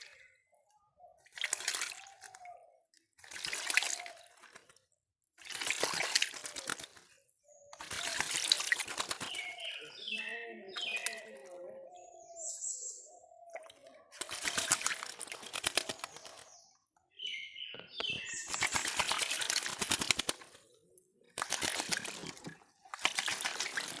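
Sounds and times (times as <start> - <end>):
bird wings fluttering and splashing: 1.2 - 9.8, 10.8 - 11.5, 13.5 - 16.6, 18.1 - 24.0.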